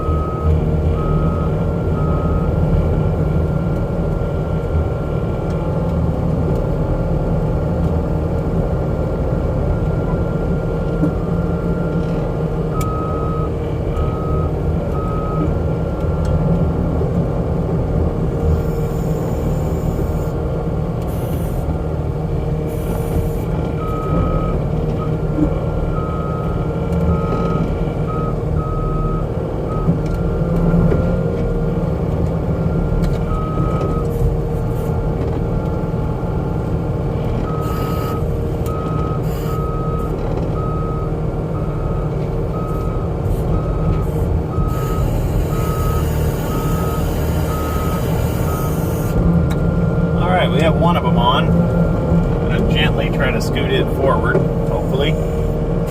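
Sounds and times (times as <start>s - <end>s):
backup alarm beeping: 0.0s - 2.5s, 12.7s - 15.5s, 22.8s - 25.2s, 37.4s - 49.1s
diesel engine running under load: 0.0s - 55.9s.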